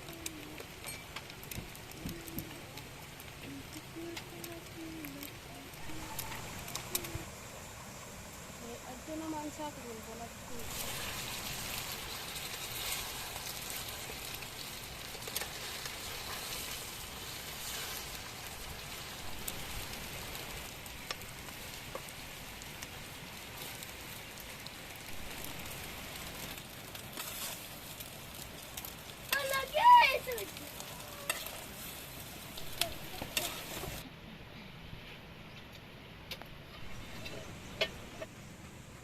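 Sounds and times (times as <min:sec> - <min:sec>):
small pops and crackles: 0:00.0 - 0:07.3, 0:10.6 - 0:34.0
food sizzling in a pan: 0:00.0 - 0:34.0, 0:36.8 - 0:38.4.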